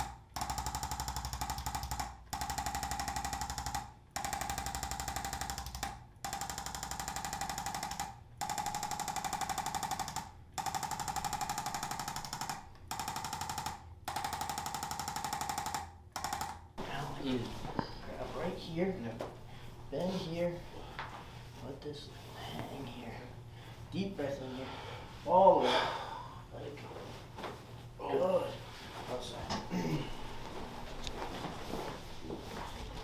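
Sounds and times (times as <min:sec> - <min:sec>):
electric adjusting tool hammering: 0:00.0 - 0:16.8.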